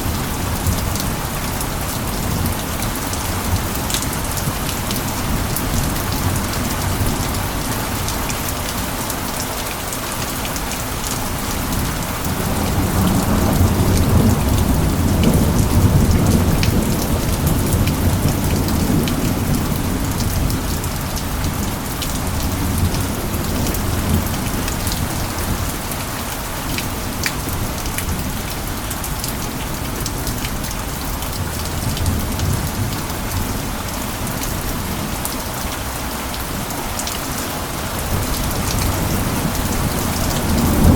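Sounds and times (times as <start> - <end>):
heavy rain pattering: 0.0 - 40.9
rolling thunder: 12.2 - 21.6, 38.0 - 40.9.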